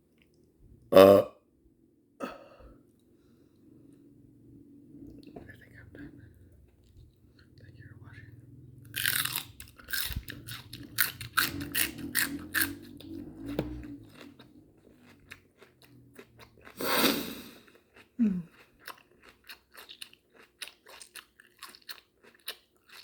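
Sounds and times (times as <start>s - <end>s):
open-mouth chewing: 5.0s - 23.0s.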